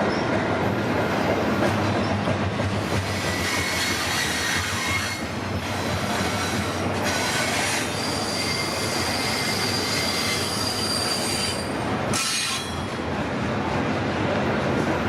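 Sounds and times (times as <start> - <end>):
train wheels rumbling on rail: 0.0 - 15.0
high-pitched wheel squeal: 6.1 - 12.8.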